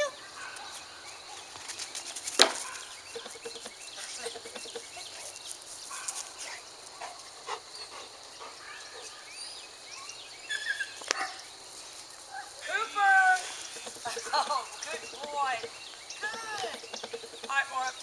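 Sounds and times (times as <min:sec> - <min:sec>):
faint dog barks and yips: 0:05.9 - 0:11.5.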